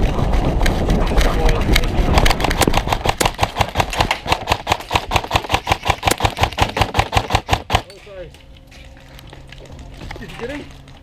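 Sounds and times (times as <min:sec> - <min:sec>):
airsoft rifle rapid fire: 0:02.0 - 0:07.9.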